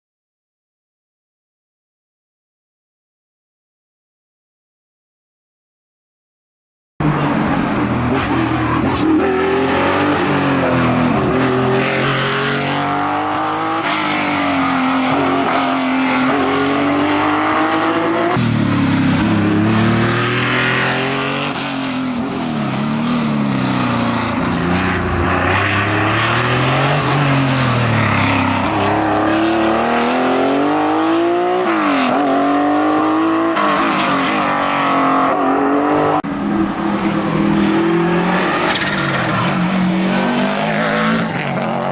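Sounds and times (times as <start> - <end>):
rally car engines revving: 7.0 - 41.9.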